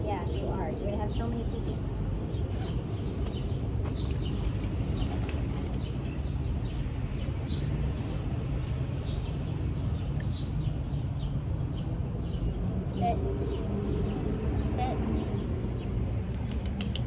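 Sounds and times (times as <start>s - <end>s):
small birds chirping: 0.0s - 17.0s
faint clicks: 16.3s - 17.0s.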